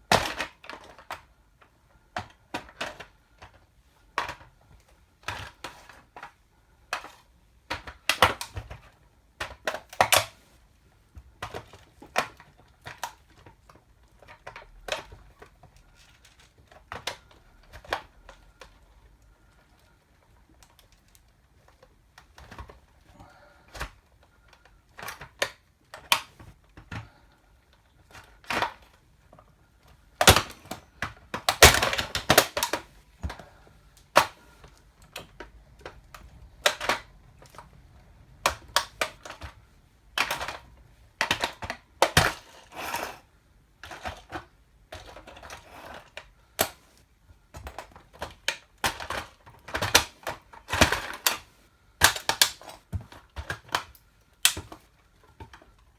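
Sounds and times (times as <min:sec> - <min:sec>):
heels cracking toy car: 0:00.1 - 0:01.3, 0:05.2 - 0:10.4, 0:30.2 - 0:46.9, 0:47.5 - 0:55.7.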